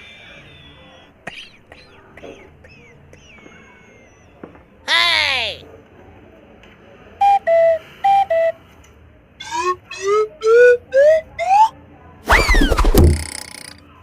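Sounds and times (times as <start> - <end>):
falling whistle: 7.2 - 8.6, 9.4 - 11.7, 12.3 - 13.0
thump: 12.3 - 13.4.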